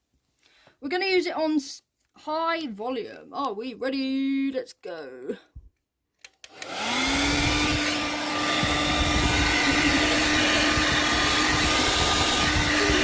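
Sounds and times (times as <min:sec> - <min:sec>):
hair dryer switch click: 0:06.2 - 0:06.8
hair dryer blowing: 0:06.4 - 0:13.0.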